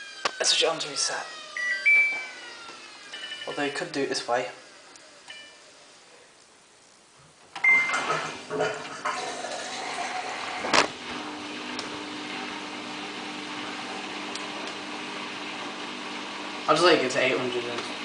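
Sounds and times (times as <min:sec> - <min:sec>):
washing machine humming: 0:00.0 - 0:05.8, 0:07.5 - 0:18.0
washing machine panel beep: 0:01.6 - 0:02.5, 0:03.1 - 0:03.8, 0:07.6 - 0:08.2.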